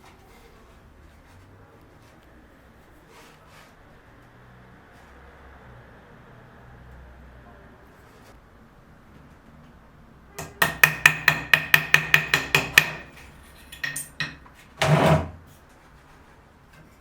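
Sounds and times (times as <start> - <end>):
hammer tapping: 10.4 - 15.2.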